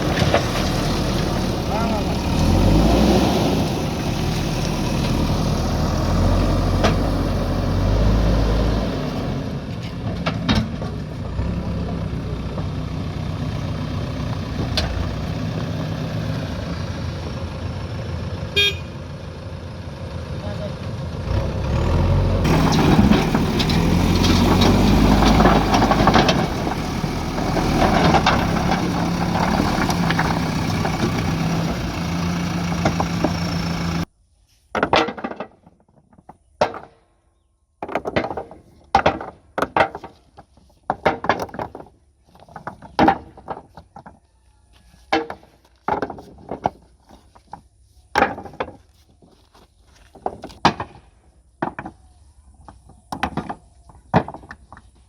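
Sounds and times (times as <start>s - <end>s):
diesel engine running: 0.0s - 34.1s
knocks and thuds: 9.8s - 11.4s.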